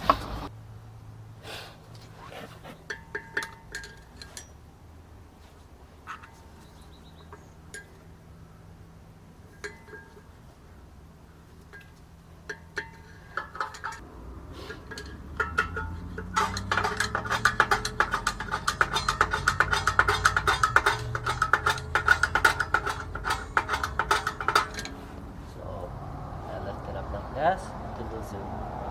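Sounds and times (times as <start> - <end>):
hand tools tapping metal: 1.9 - 4.6, 9.5 - 10.4, 11.6 - 14.0, 14.6 - 25.2
ratcheting metallic clicks: 14.7 - 25.0.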